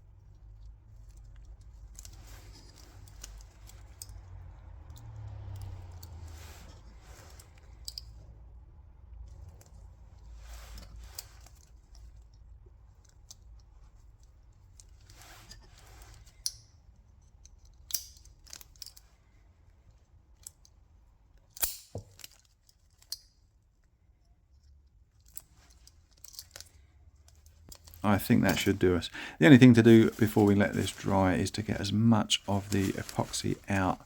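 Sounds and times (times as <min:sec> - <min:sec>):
handling rustle: 0:00.1 - 0:04.3, 0:09.3 - 0:16.5, 0:24.6 - 0:34.0
metal clips clicking: 0:21.5 - 0:22.4.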